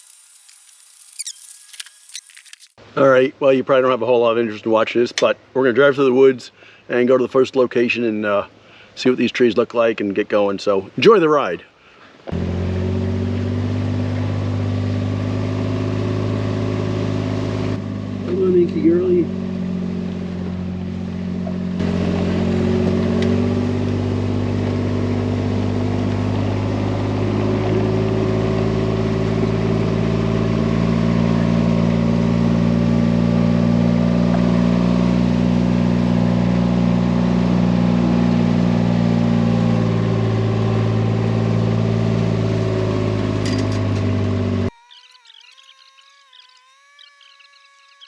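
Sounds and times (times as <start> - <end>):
vehicle engine running under load: 12.4 - 44.8.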